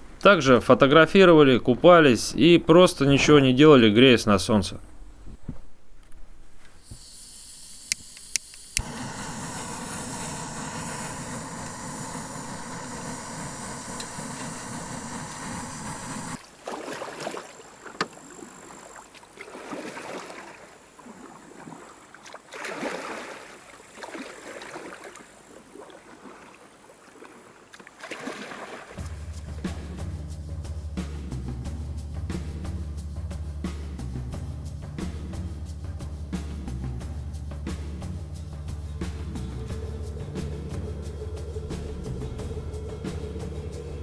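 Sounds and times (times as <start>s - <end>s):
steady rushing noise: 7.8s - 16.4s
canoe paddle splashing water: 16.3s - 29.0s.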